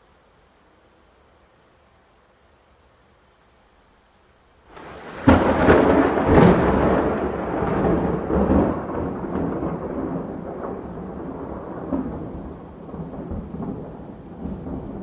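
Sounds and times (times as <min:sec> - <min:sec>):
thunder rumbling and cracking: 0:04.7 - 0:15.0.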